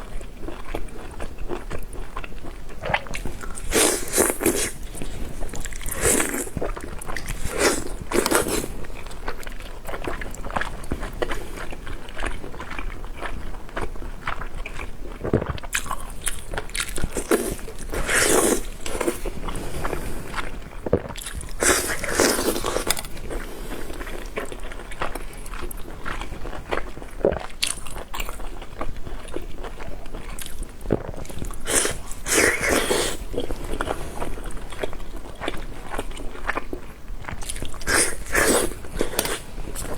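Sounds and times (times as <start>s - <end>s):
wet chewing and mouth clicks: 0.0s - 39.9s.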